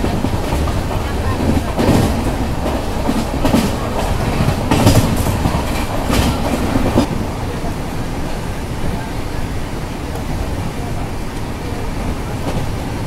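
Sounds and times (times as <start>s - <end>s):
wheels clattering over rail joints: 0.0s - 8.3s
train rumble: 0.0s - 13.0s.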